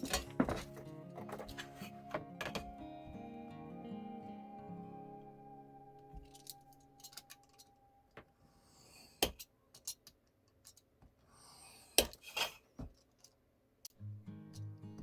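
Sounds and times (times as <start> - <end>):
background music: 0.0 - 8.2.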